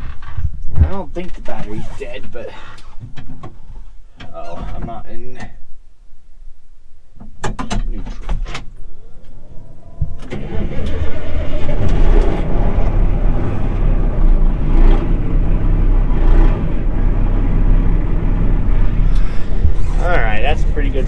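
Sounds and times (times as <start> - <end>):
tractor diesel engine running: 7.8 - 21.0.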